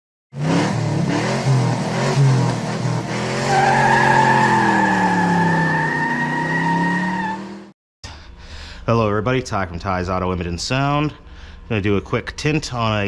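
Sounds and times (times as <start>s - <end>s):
car engine revving: 0.4s - 7.7s
tyre squeal: 3.3s - 7.4s.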